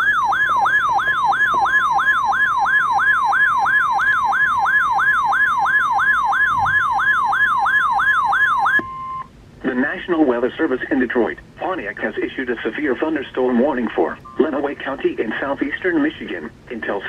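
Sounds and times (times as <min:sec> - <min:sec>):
electronic alert siren: 0:00.0 - 0:09.3.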